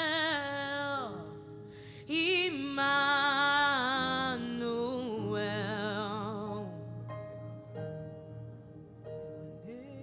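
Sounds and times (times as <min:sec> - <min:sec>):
person singing with vibrato: 0:00.0 - 0:07.2, 0:09.2 - 0:10.0.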